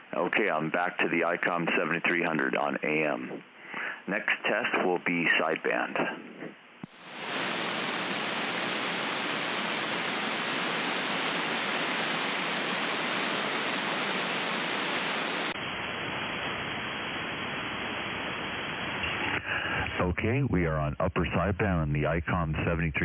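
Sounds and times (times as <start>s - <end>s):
radio static hiss: 0.0s - 23.0s.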